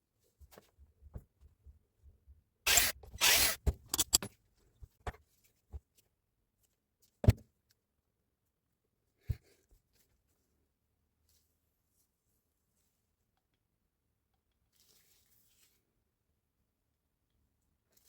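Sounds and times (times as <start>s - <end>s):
short rattling bursts: 2.7s - 4.3s
tools clicking and knocking: 2.7s - 4.3s.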